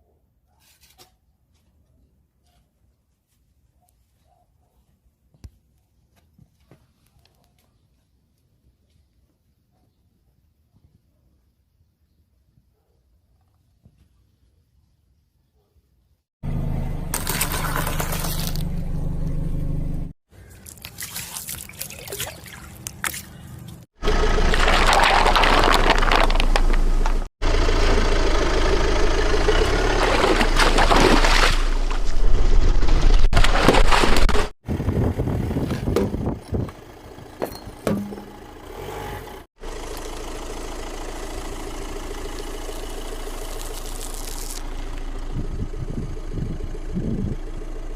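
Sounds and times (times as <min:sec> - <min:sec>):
car engine running: 0:16.4 - 0:20.2, 0:24.0 - 0:33.2, 0:36.2 - 0:47.9
tyres crunching over objects: 0:22.8 - 0:27.3, 0:29.6 - 0:34.5.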